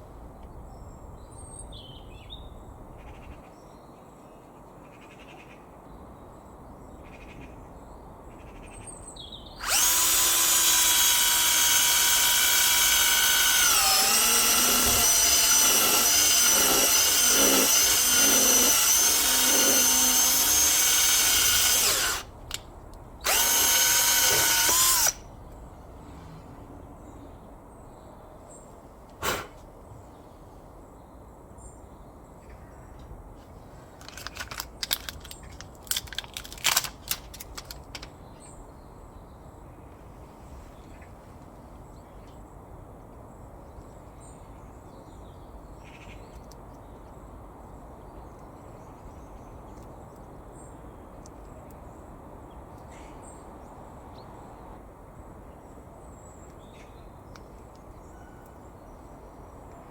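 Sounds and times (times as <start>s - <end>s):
power drill spinning: 9.6s - 22.3s, 23.2s - 25.2s
clicks and rattles: 34.0s - 38.2s.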